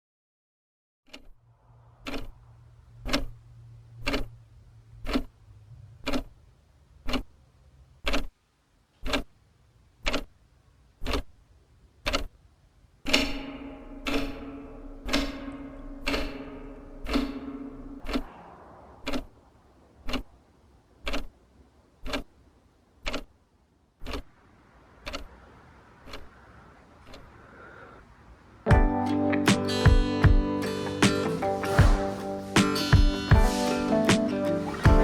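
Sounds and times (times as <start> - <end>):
clock ticking: 13.1 - 18.3, 28.7 - 35.0.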